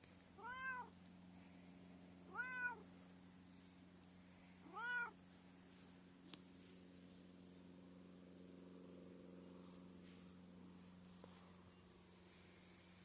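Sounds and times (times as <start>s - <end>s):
cat meowing: 0.4s - 0.9s, 2.3s - 2.8s, 4.6s - 5.2s.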